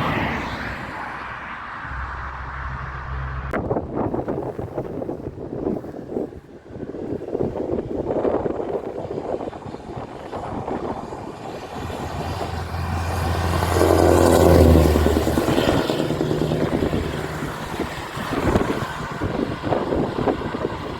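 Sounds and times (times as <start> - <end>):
heavy truck engine passing: 0.0 - 4.0, 9.9 - 20.9
wind noise on microphone: 0.0 - 20.9.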